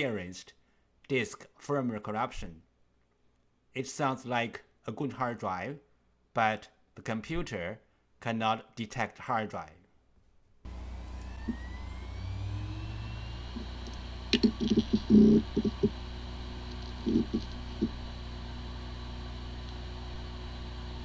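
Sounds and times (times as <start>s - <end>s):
hard drive spinning up whine: 10.7s - 21.0s
hard drive ticks: 10.7s - 21.0s
steady spinning hum: 10.7s - 21.0s.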